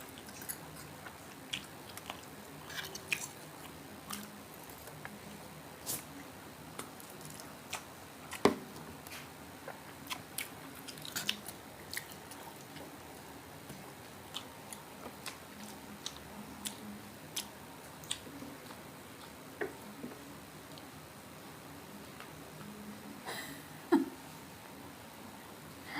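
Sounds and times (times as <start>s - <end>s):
biting and chewing crispy food: 9.7s - 13.0s.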